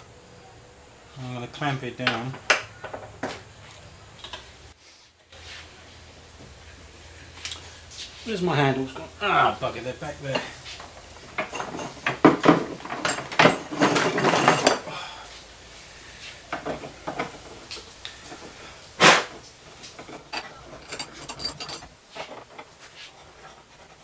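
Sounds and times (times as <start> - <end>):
metal tools clattering: 8.7 - 15.0, 16.5 - 23.5.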